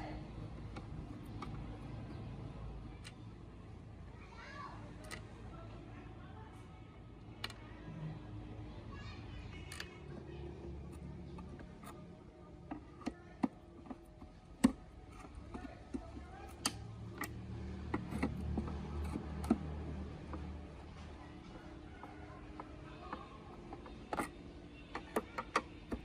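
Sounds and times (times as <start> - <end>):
clicks and taps of tools: 12.6 - 21.2, 22.0 - 26.0.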